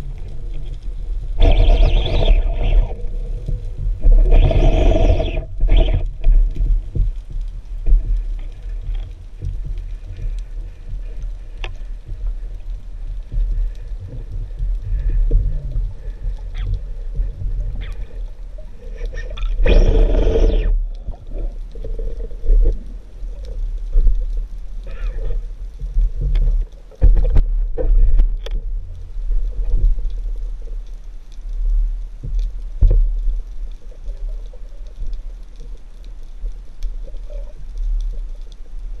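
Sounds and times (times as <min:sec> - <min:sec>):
low rumble of moving water: 0:00.0 - 0:39.0
gurgling rush of bubbles: 0:01.3 - 0:06.5.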